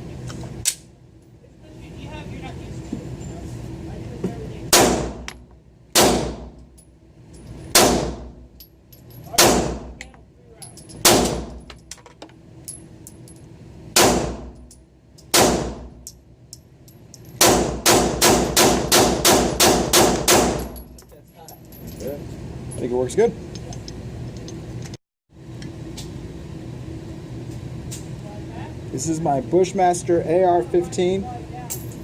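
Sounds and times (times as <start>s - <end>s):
pistol shots: 4.7s - 5.3s, 6.0s - 6.5s, 7.7s - 8.3s, 9.4s - 9.9s, 11.0s - 11.5s, 14.0s - 14.5s, 15.3s - 15.9s, 17.4s - 20.6s.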